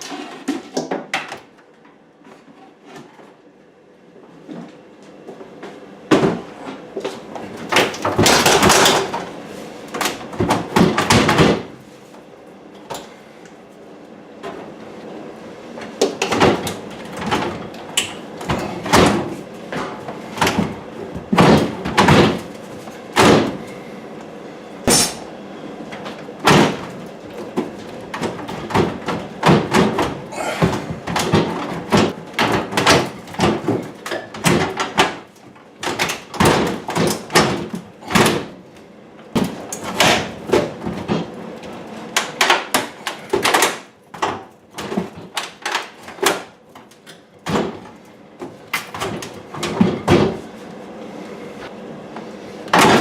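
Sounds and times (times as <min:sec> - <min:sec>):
cabinets knocking and scraping: 0:00.0 - 0:03.4, 0:06.1 - 0:11.8, 0:15.8 - 0:23.7, 0:25.9 - 0:38.6, 0:39.3 - 0:50.5, 0:52.7 - 0:53.0.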